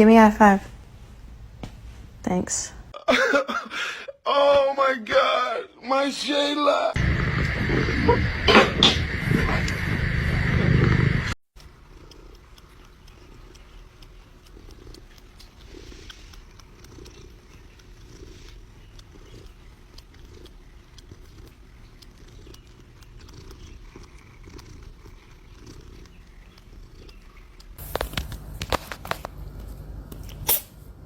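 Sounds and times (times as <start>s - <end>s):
cat purring: 7.0s - 27.9s.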